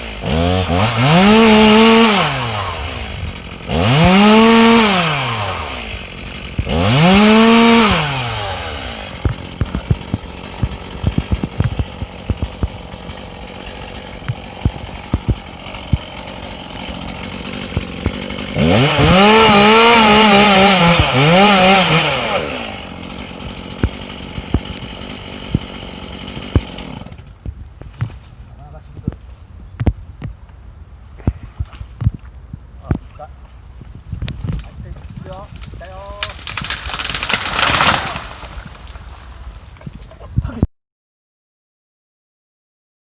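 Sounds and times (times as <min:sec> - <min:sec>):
chainsaw revving and idling: 0:00.0 - 0:27.4, 0:34.6 - 0:39.2.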